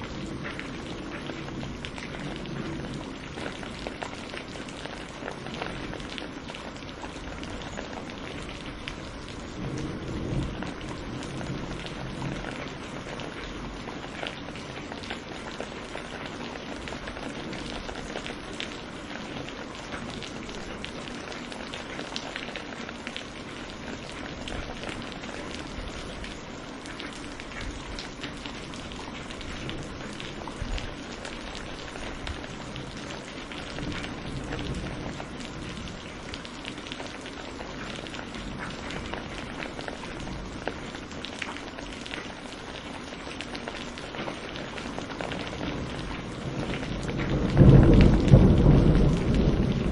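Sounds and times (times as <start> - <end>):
thunder rumble: 0.0 - 6.4, 7.3 - 14.8, 27.7 - 37.1, 45.3 - 49.9
heavy rain pattering: 0.0 - 49.9.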